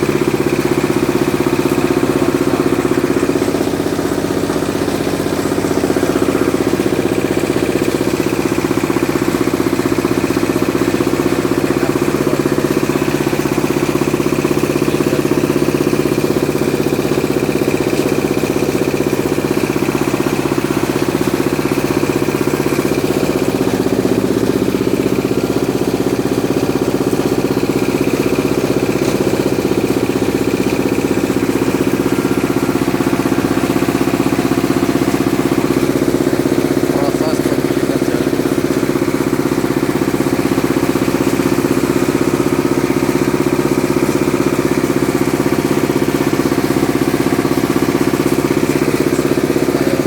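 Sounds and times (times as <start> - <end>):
grinding mill engine droning: 0.0 - 50.0.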